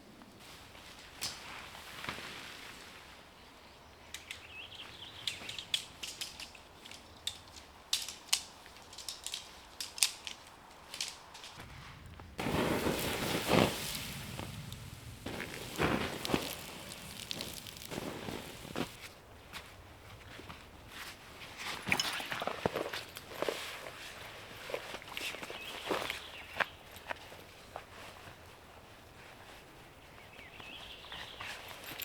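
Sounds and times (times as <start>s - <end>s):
crunching and rustling: 5.2s - 28.4s
gear clicks and knocks: 5.3s - 11.6s.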